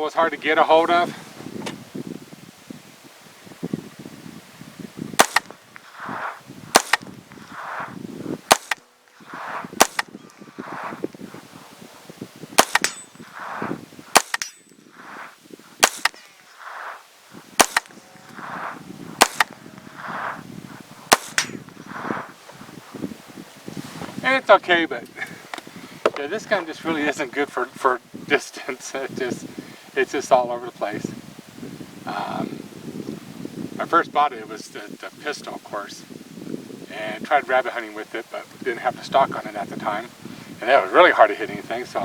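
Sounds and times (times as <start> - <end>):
rifle shots: 5.2 - 5.6, 6.7 - 7.1, 8.5 - 8.9, 9.8 - 10.2, 12.6 - 13.1, 14.1 - 14.6, 15.8 - 16.2, 17.6 - 18.0, 19.2 - 19.6, 21.1 - 21.6.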